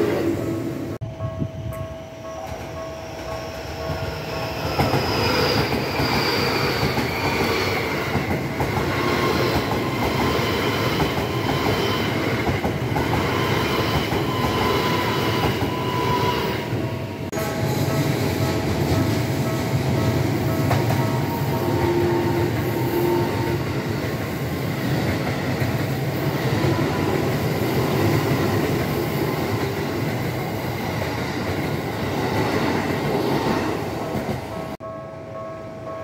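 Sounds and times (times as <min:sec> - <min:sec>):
train wheels rumbling over track: 0:00.0 - 0:34.8
crossing warning bell ringing: 0:01.0 - 0:05.0, 0:06.4 - 0:24.4, 0:34.4 - 0:36.0.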